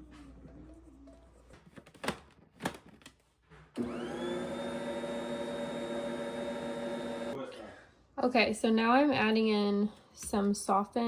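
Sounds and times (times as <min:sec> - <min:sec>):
stand mixer motor whine: 0:03.8 - 0:07.4.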